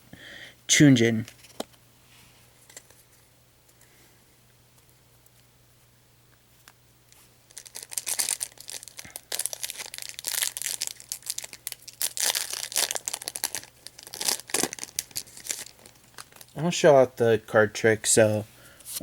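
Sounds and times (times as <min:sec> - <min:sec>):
foil wrapper crinkling and tearing: 0:07.5 - 0:16.6.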